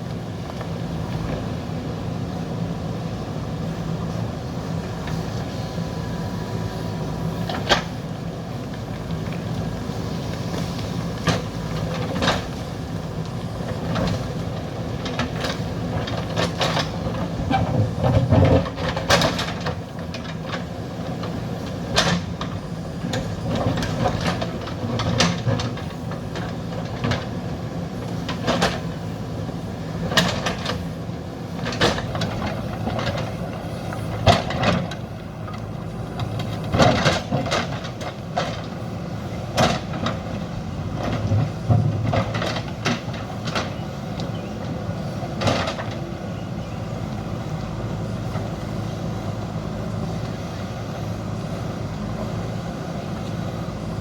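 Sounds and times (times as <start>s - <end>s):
diesel engine running: 0.0s - 54.0s
metallic clanks of digger bucket: 15.0s - 21.3s, 34.0s - 35.0s.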